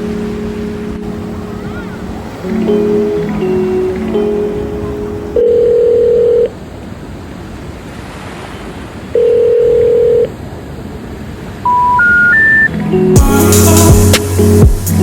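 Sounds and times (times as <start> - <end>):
rising telephone beeps: 0.0 - 6.5, 9.2 - 10.3, 11.6 - 12.7
low telephone tone: 0.0 - 6.6, 9.2 - 10.3, 11.7 - 12.8
sea surf: 0.0 - 15.0
wind: 0.0 - 15.0.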